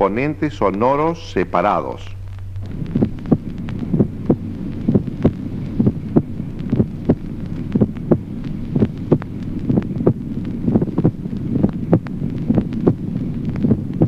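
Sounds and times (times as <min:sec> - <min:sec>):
heartbeat lub-dub: 0:00.0 - 0:14.0.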